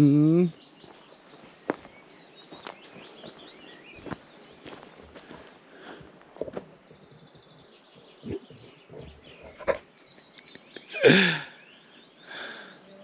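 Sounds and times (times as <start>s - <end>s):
faint bird chirps: 0.0s - 6.1s, 6.9s - 13.0s
footsteps on outdoor path: 0.5s - 10.4s.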